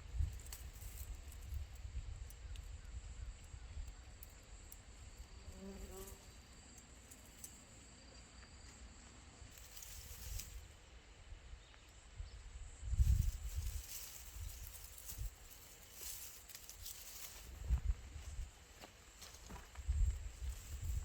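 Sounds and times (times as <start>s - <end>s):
wind rumble on microphone: 0.0s - 4.3s, 12.1s - 15.6s, 16.8s - 18.6s, 19.5s - 21.0s
crickets chirping: 0.0s - 21.0s.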